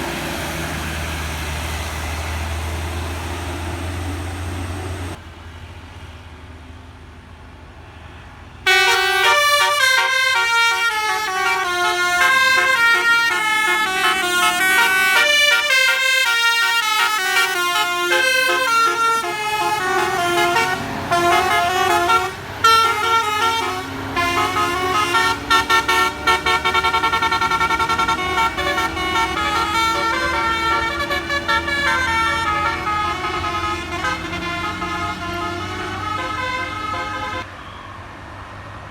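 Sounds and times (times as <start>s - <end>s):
musical air horn melody: 8.7s - 37.5s.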